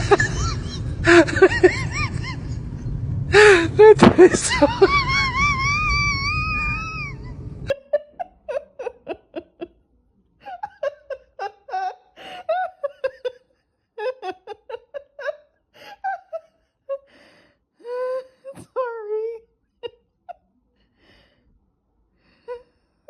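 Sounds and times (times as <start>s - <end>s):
person laughing: 0.0s - 9.8s, 10.4s - 13.4s, 14.0s - 17.0s.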